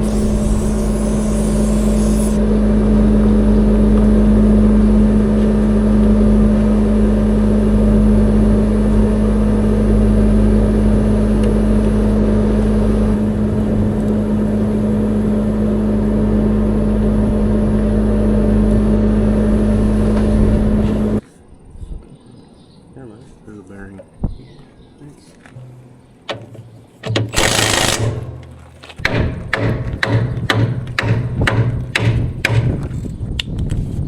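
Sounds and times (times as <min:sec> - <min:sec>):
engine humming steadily: 0:00.0 - 0:21.2.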